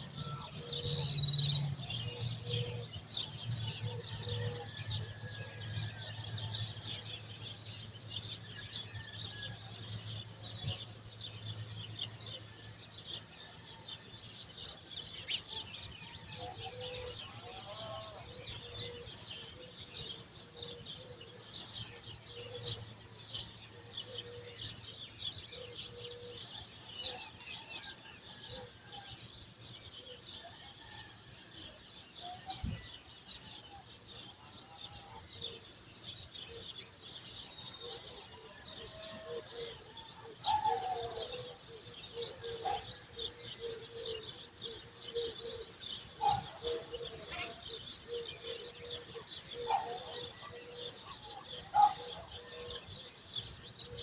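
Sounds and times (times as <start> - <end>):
small birds chirping: 32.2 - 54.0.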